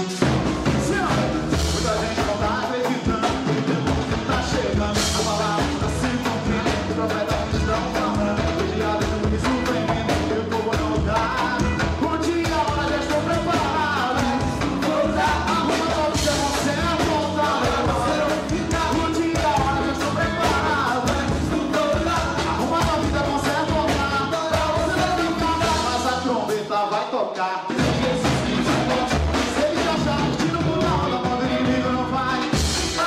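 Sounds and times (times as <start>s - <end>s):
gospel band music: 0.0s - 33.0s
person singing: 0.0s - 33.0s.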